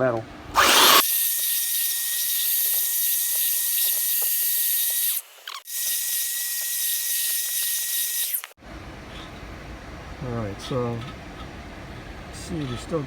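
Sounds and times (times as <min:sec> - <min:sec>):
belt sander grinding metal: 0:00.6 - 0:08.5.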